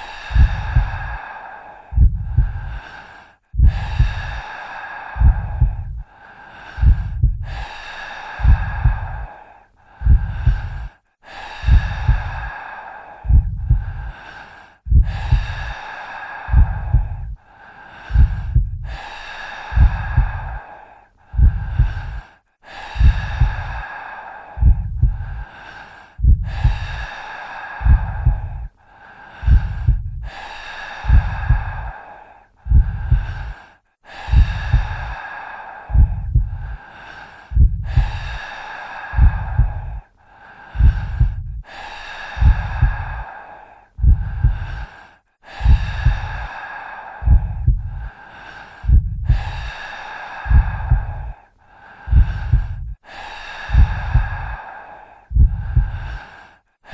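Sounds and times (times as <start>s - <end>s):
heavy breathing: 0.0s - 56.9s
heartbeat thumps: 0.3s - 1.2s, 1.9s - 2.8s, 3.6s - 4.5s, 5.2s - 6.0s, 6.8s - 7.8s, 8.4s - 9.3s, 10.0s - 10.9s, 11.6s - 12.5s, 13.2s - 14.2s, 14.9s - 15.8s, 16.5s - 17.4s, 18.1s - 19.0s, 19.7s - 20.6s, 21.3s - 22.2s, 22.9s - 23.8s, 24.6s - 25.4s, 26.2s - 27.1s, 27.8s - 28.7s, 29.4s - 30.4s, 31.0s - 31.9s, 32.6s - 33.6s, 34.2s - 35.2s, 35.9s - 36.8s, 37.5s - 38.4s, 39.1s - 40.0s, 40.8s - 41.7s, 42.3s - 43.2s, 44.0s - 44.8s, 45.6s - 46.5s, 47.2s - 48.1s, 48.8s - 49.7s, 50.4s - 51.3s, 52.1s - 53.0s, 53.7s - 54.6s, 55.3s - 56.2s.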